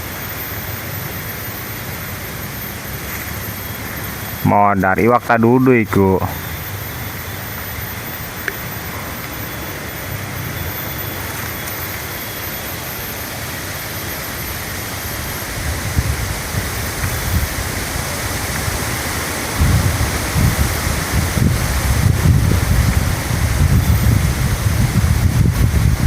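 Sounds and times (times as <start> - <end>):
steady rushing outdoor noise: 0.0 - 26.0
wind buffeting microphone: 15.4 - 26.0.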